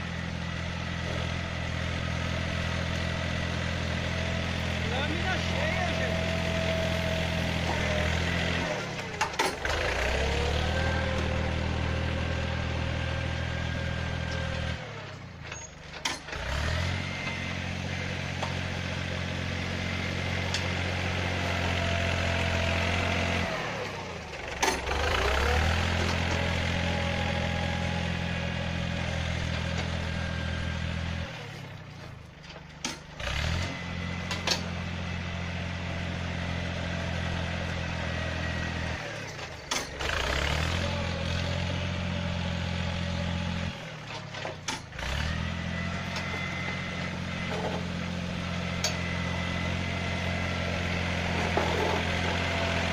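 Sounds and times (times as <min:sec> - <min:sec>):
tractor diesel engine running: 0:00.0 - 0:52.9.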